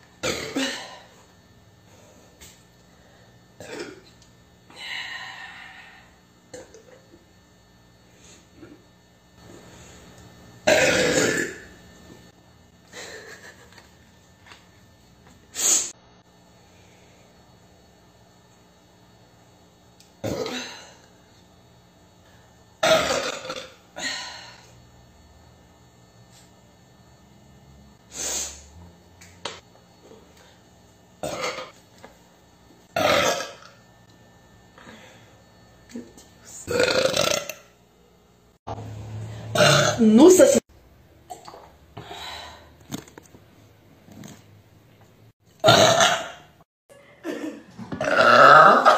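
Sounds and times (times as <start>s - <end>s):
woman burping: 0.2s - 1.2s, 3.6s - 4.1s, 6.5s - 7.0s, 10.6s - 11.7s, 20.2s - 21.0s, 22.8s - 24.6s, 31.2s - 31.8s, 33.0s - 33.8s, 36.6s - 37.7s, 39.5s - 40.4s, 45.6s - 48.9s.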